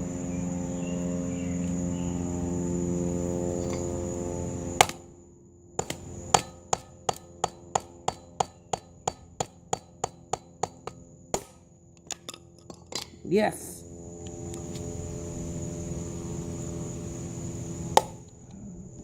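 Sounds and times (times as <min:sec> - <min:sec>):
steady buzzing hum: 0:00.0 - 0:19.0
tool knocking on battery casing: 0:05.8 - 0:13.0.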